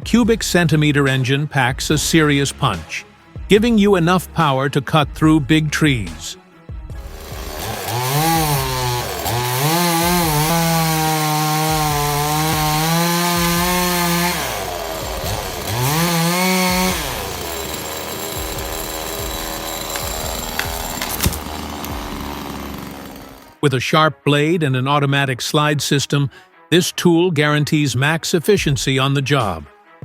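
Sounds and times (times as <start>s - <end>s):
chainsaw engine revving: 7.0s - 23.6s.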